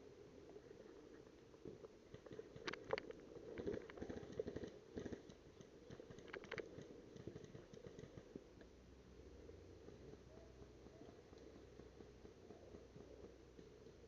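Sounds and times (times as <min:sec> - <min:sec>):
faint clicks: 0:00.5 - 0:08.8.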